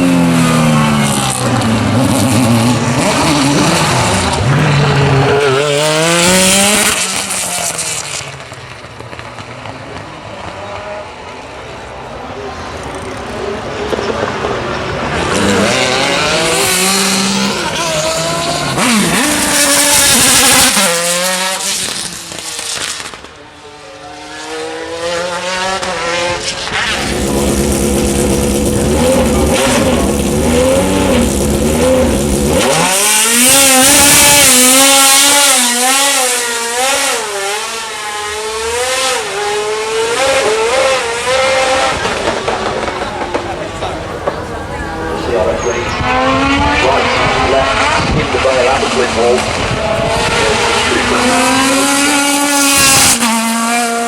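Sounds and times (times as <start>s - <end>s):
race car engine with gear changes: 0.0s - 54.0s.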